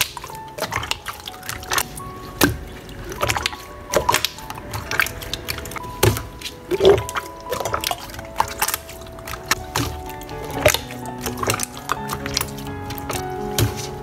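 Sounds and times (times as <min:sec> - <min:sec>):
background music: 0:00.0 - 0:14.0
slime squishing wet clicks: 0:00.0 - 0:14.0.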